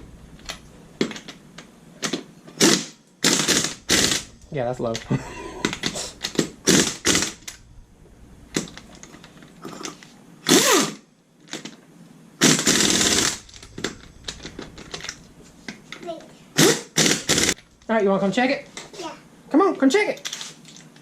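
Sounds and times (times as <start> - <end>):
impact wrench rattling bursts: 2.1 - 9.1, 10.4 - 11.6, 12.4 - 16.0, 16.6 - 17.9.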